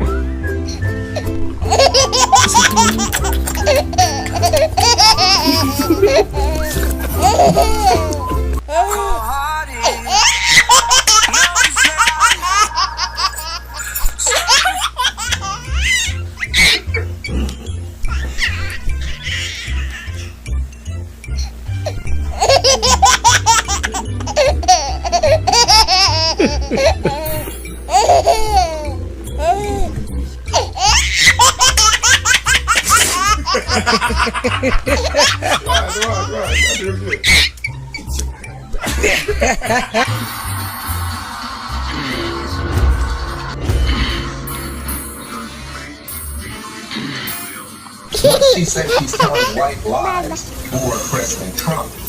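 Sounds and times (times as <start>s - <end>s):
music with low beat: 0.0s - 8.7s, 16.3s - 19.2s, 37.5s - 46.6s
baby-like giggling laughter: 1.6s - 8.2s, 9.8s - 17.4s, 18.1s - 20.4s, 21.8s - 29.9s, 30.5s - 37.6s, 48.1s - 50.4s
person laughing high-pitched: 1.7s - 9.1s, 22.4s - 28.8s.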